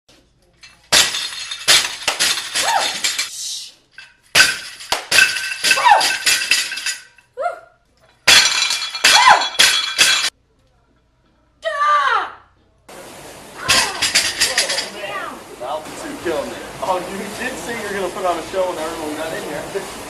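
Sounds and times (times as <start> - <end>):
woman yelling with exertion: 2.6 - 3.7, 5.7 - 6.2, 9.1 - 9.6.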